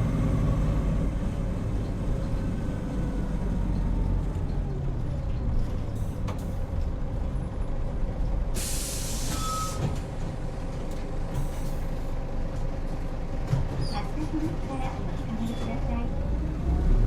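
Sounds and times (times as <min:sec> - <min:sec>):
bus diesel engine and road noise: 0:00.0 - 0:17.0
air brake hissing: 0:08.6 - 0:10.0.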